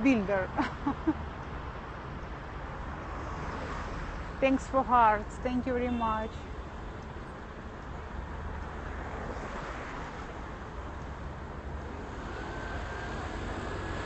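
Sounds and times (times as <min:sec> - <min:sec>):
passing traffic: 0:00.0 - 0:14.0.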